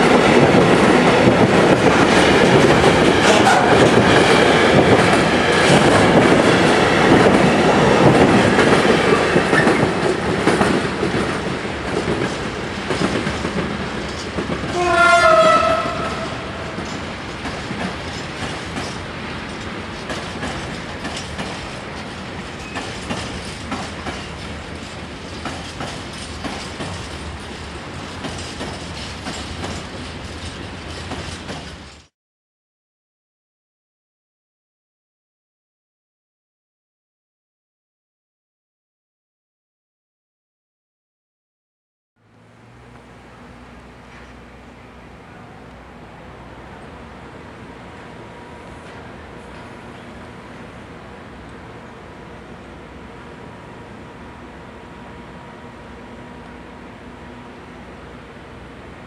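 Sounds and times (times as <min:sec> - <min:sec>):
freight train wagons clattering: 0:00.0 - 0:32.1, 0:42.4 - 0:50.7
train horn: 0:14.7 - 0:16.8.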